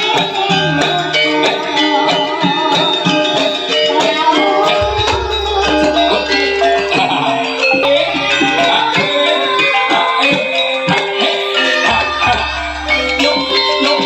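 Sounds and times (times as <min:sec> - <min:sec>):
music with melodic instruments and drums: 0:00.0 - 0:14.0
deep low note: 0:04.8 - 0:07.2.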